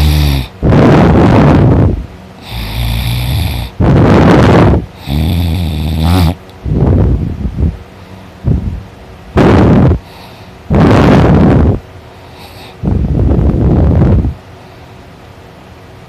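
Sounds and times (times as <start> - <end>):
person snoring loudly: 0.0 - 7.1, 9.4 - 14.4.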